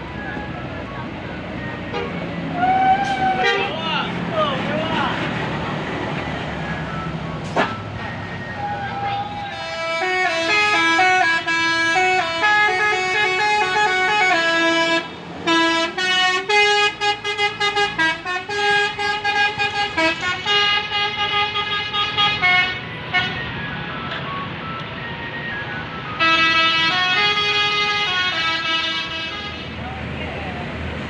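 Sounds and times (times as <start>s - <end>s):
bus horn playing a tune: 1.9s - 3.9s, 8.7s - 23.6s, 26.0s - 29.8s.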